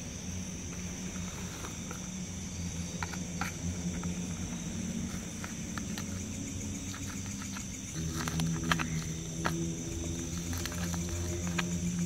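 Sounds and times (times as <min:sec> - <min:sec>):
high insect buzzing: 0:00.0 - 0:12.0
low steady hum: 0:00.0 - 0:12.0
small clicks and ticks: 0:02.9 - 0:12.0.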